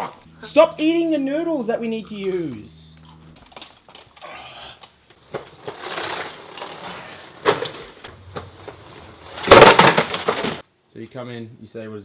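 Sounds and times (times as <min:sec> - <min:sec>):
packets rustling: 0:05.2 - 0:10.6.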